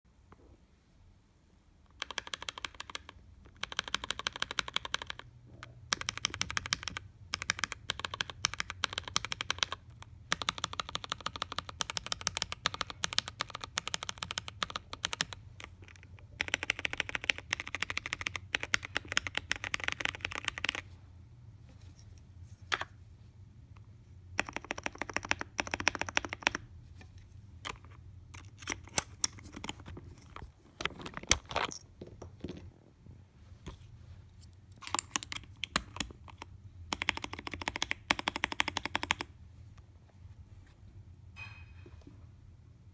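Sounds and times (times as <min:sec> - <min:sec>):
faint low hum: 0:00.1 - 0:42.9
typing on mechanical keyboard: 0:01.9 - 0:20.8, 0:24.4 - 0:26.7, 0:28.4 - 0:29.9, 0:34.8 - 0:39.3.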